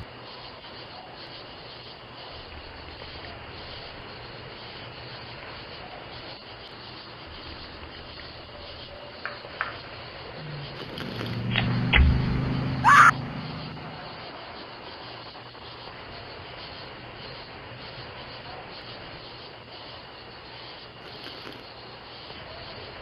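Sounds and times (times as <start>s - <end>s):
steady hissing noise: 0.0s - 11.2s, 14.1s - 23.0s.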